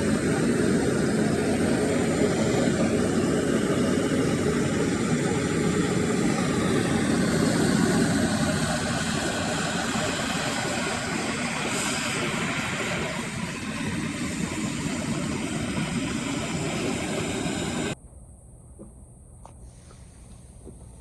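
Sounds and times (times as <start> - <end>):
cnc router carving wood: 0.0 - 18.0.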